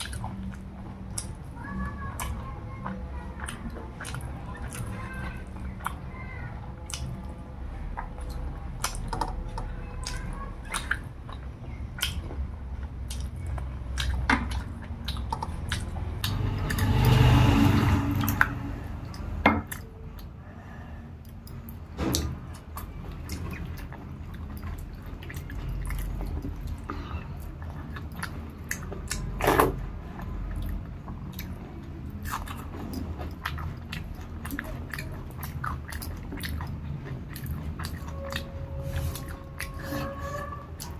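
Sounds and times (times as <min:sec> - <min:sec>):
wet chewing and lip smacks: 0:00.0 - 0:01.5, 0:06.8 - 0:07.3, 0:10.0 - 0:16.4, 0:21.2 - 0:29.6, 0:30.2 - 0:40.9.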